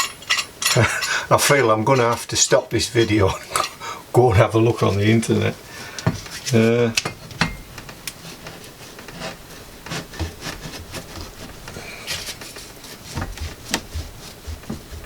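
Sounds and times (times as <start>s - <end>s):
metal parts clicking and knocking: 0.0s - 2.5s
metal parts rubbing: 0.0s - 3.8s, 6.2s - 14.5s.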